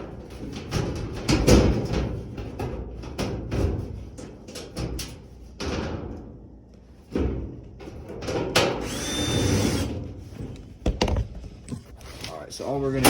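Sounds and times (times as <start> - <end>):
cordless drill whirring: 8.8 - 9.9.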